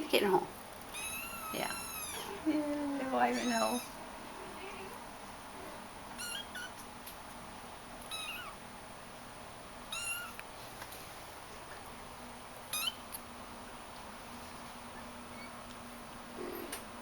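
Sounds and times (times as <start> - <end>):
kittens meowing: 0.9 - 2.5, 3.2 - 4.0, 6.2 - 6.8, 8.0 - 8.6, 9.9 - 10.4, 12.7 - 13.2.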